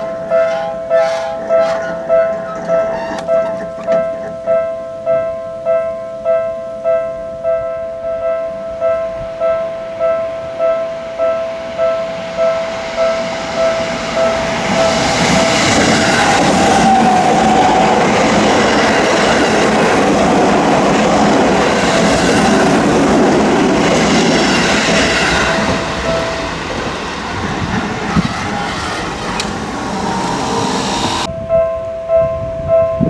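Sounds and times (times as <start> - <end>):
train wheels rattling: 0.0 - 4.6, 10.8 - 31.3
level crossing warning bell: 0.0 - 33.0
rush of loud noise: 11.1 - 31.3.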